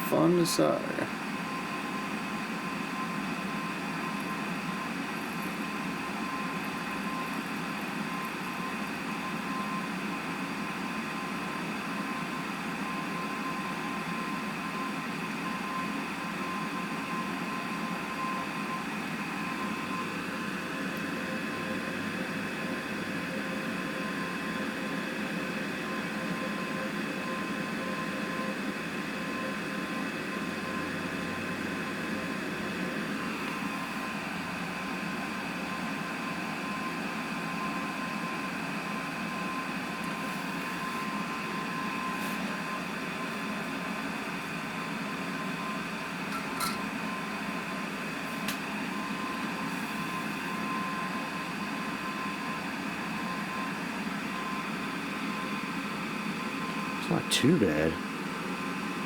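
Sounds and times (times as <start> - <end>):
small fan whirring: 0.0 - 44.1.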